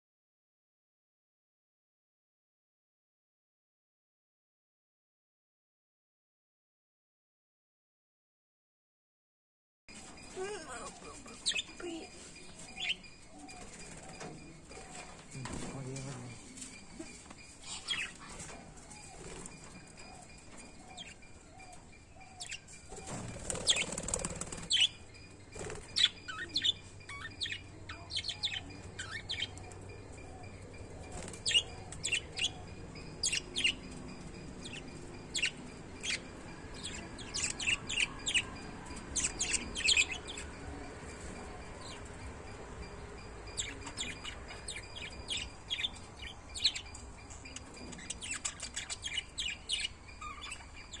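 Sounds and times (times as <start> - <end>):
parrots chirping: 10.0 - 15.3, 16.4 - 51.0
wing flapping: 23.0 - 24.8.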